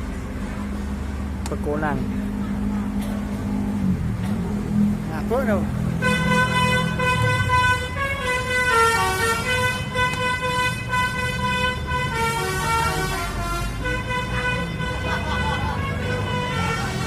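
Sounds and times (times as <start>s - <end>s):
engine rumble: 0.0s - 17.0s
musical vehicle horn tune: 6.0s - 17.0s.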